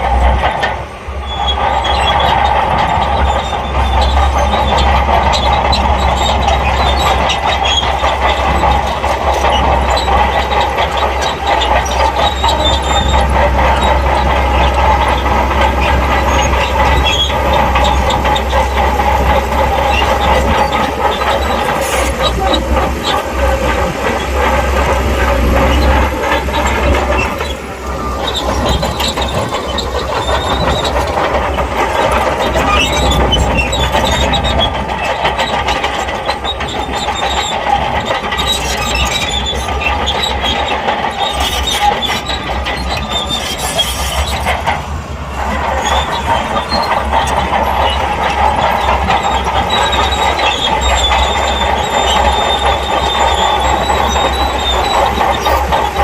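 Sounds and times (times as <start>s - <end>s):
bulldozer diesel engine running: 0.0s - 56.0s
steel tracks clanking and squealing: 0.0s - 56.0s.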